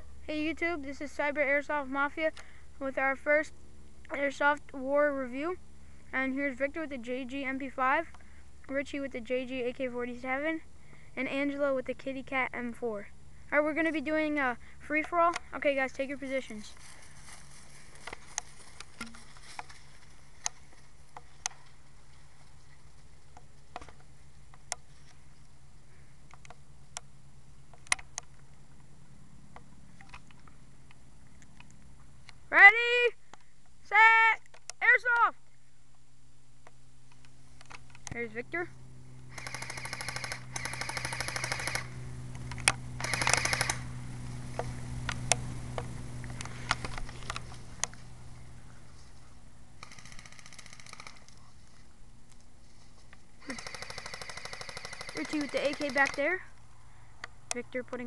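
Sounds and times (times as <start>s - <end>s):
steady low hum: 0.0s - 58.0s
sharp clicks and snaps: 27.7s - 28.4s, 53.5s - 56.2s
airsoft gun bursts: 39.3s - 42.0s, 42.7s - 44.0s, 49.8s - 51.4s, 53.4s - 56.5s.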